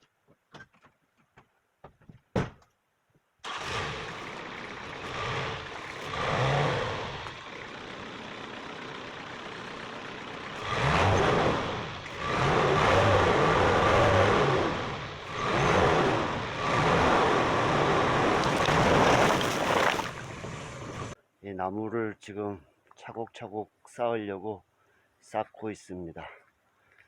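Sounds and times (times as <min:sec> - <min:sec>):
road noise: 0:03.4 - 0:21.2
vehicle engine revving: 0:03.5 - 0:21.2.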